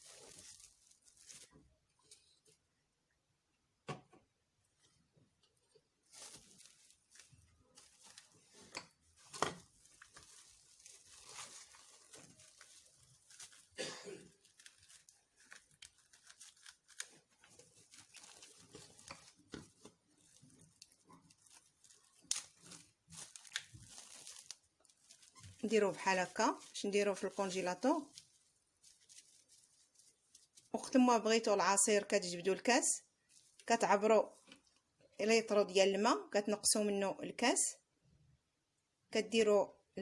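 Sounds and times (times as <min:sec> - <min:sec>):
cling film crinkling and tearing: 0:00.0 - 0:01.6, 0:06.1 - 0:30.7.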